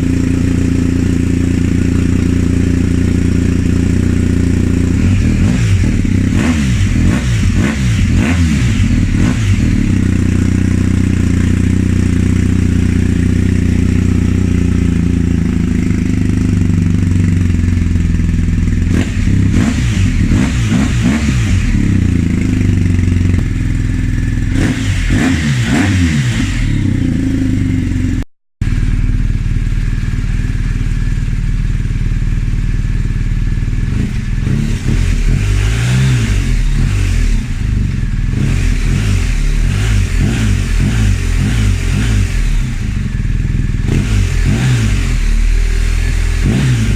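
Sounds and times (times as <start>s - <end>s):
motorcycle engine idling and revving: 0.0s - 46.9s.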